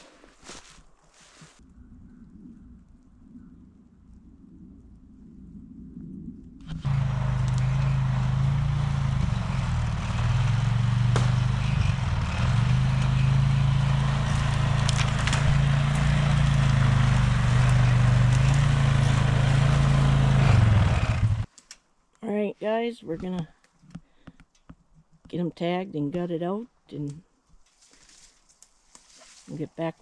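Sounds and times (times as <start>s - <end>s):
atv engine droning: 6.6s - 21.5s.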